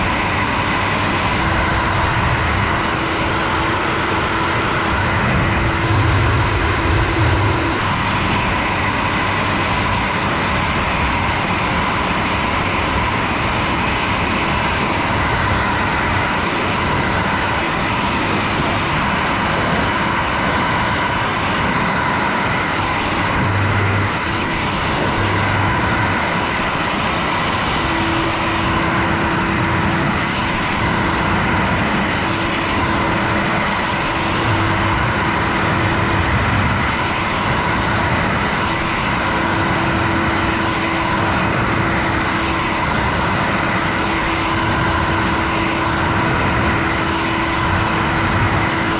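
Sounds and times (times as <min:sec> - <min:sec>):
hair dryer blowing: 0:00.0 - 0:48.9.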